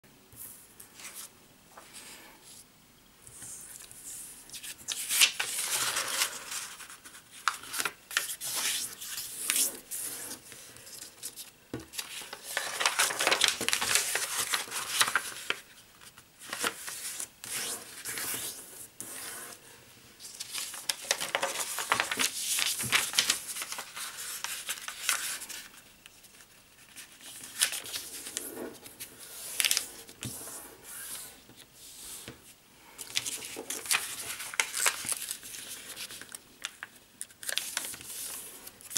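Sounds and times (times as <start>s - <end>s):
paper folding and rustling: 3.4s - 19.6s, 20.2s - 31.7s, 33.0s - 38.9s.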